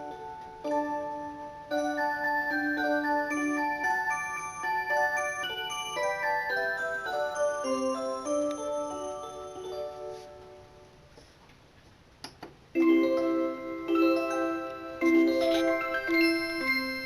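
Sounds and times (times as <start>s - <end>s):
electronic alarm clock melody: 0.0s - 11.0s, 12.8s - 17.0s.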